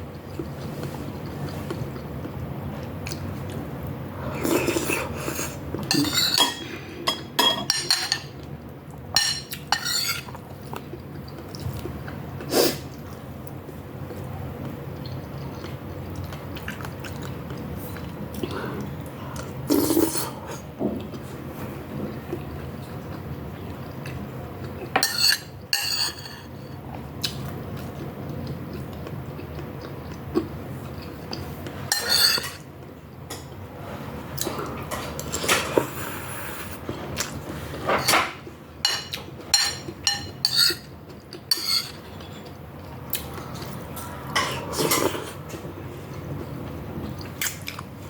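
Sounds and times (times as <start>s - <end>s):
cutlery clinking against a dish: 5.9s - 8.4s, 9.2s - 10.4s, 25.0s - 26.5s, 31.9s - 32.6s, 37.9s - 42.5s.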